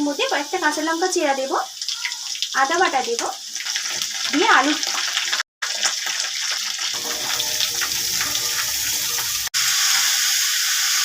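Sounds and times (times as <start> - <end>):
food sizzling in hot oil: 0.0 - 11.0.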